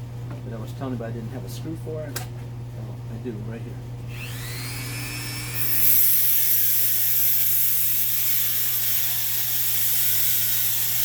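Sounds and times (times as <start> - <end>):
rotary tool grinding metal: 4.1 - 11.0.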